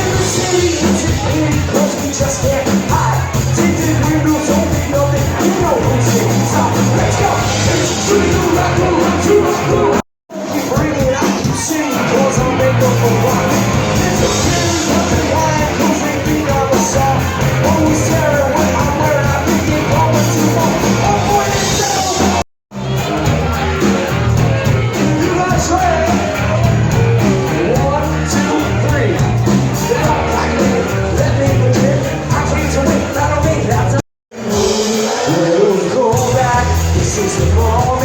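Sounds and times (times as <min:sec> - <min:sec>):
music with singing: 0:00.0 - 0:38.0.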